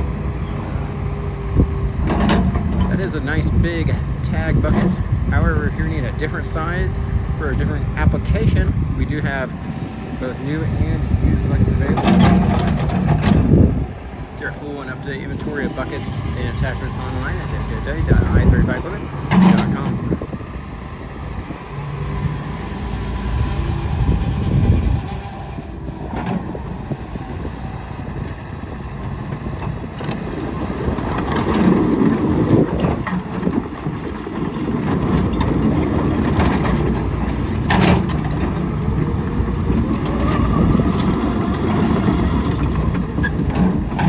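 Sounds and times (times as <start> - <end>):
excavator engine rumble: 0.0 - 44.0
metallic clanks: 2.0 - 3.2, 15.1 - 20.0, 30.0 - 44.0.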